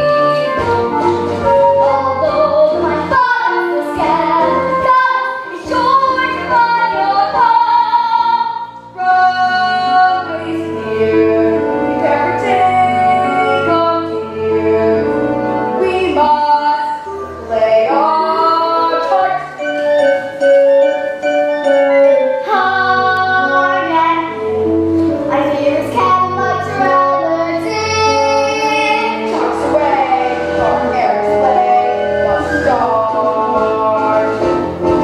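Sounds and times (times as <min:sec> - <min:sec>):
instrumental accompaniment: 0:00.0 - 0:35.0
young performers singing: 0:26.3 - 0:35.0.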